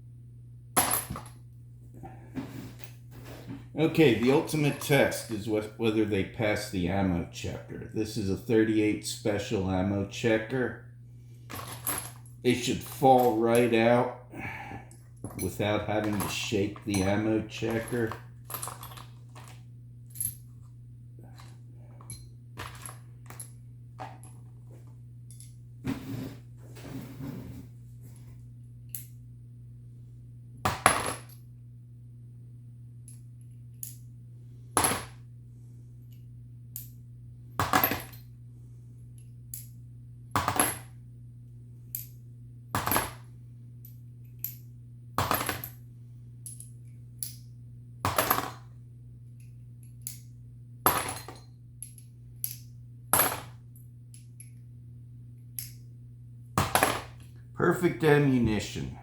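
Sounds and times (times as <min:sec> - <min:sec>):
brass cartridges clinking: 0:14.9 - 0:19.6.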